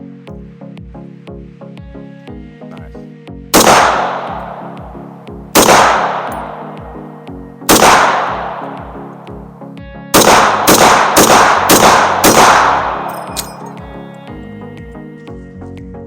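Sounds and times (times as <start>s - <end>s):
rifle shots echoing: 3.5s - 14.0s.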